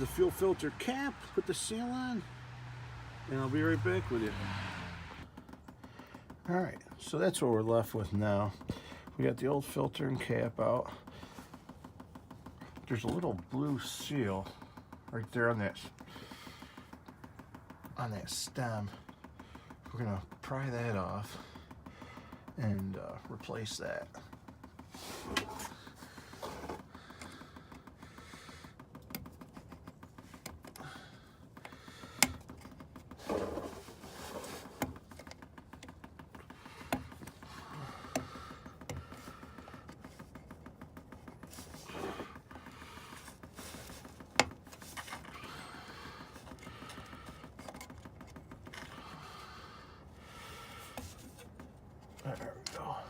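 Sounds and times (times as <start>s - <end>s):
small tool clicking and scraping: 24.2s - 49.2s.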